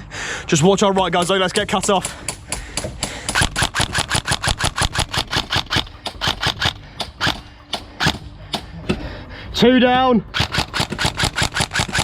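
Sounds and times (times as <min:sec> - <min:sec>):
airsoft rifle shots: 0:03.3 - 0:08.7, 0:10.3 - 0:12.0.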